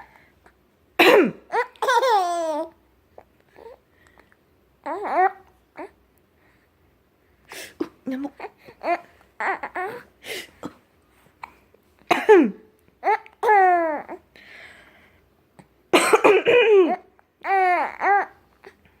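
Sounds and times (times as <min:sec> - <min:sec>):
woman coughing: 0:01.0 - 0:01.5, 0:12.1 - 0:12.6, 0:15.9 - 0:17.0.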